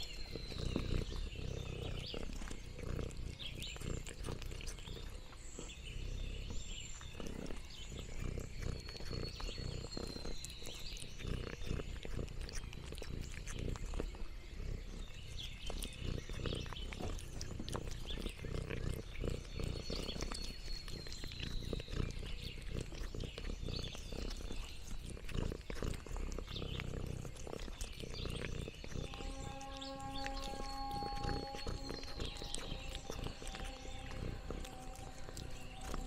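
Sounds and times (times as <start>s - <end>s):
cat purring: 0.0s - 36.0s
high chirps: 29.0s - 36.0s.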